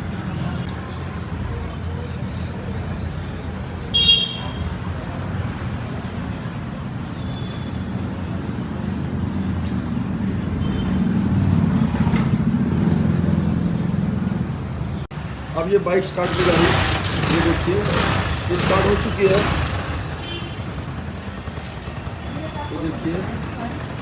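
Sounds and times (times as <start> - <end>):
motorcycle engine rumbling: 7.9 - 24.0.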